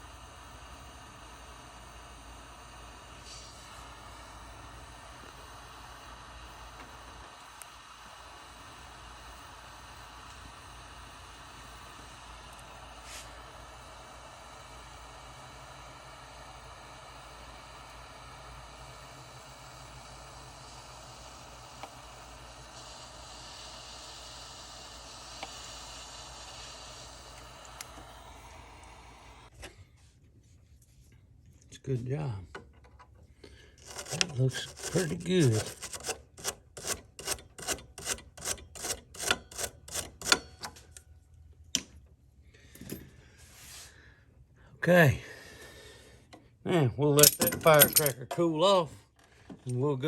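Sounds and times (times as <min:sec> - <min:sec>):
torch flame hissing: 0:00.0 - 0:29.6, 0:33.6 - 0:37.2, 0:44.8 - 0:46.3, 0:47.0 - 0:47.9.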